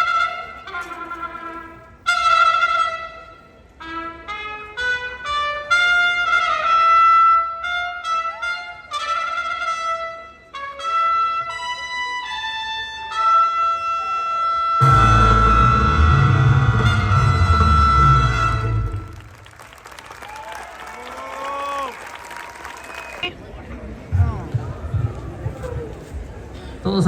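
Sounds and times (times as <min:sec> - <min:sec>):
solo trumpet melody: 0:00.0 - 0:19.6.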